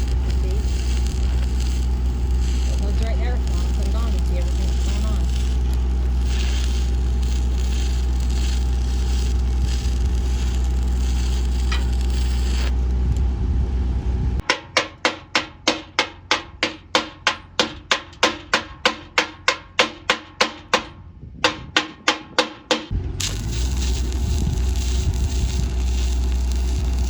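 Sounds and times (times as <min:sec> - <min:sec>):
arc welding crackling: 0:00.0 - 0:13.3, 0:23.2 - 0:27.0
low hum: 0:00.0 - 0:14.4, 0:22.9 - 0:27.0.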